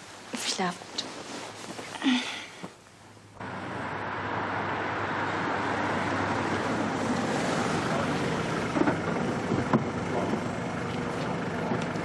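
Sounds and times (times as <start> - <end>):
road traffic passing: 2.9 - 12.0.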